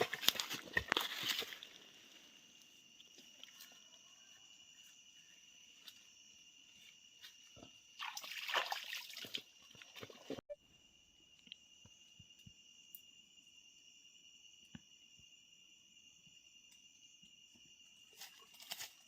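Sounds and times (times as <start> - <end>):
insects trilling: 0.0 - 19.0
water sloshing and splashing: 8.0 - 10.4.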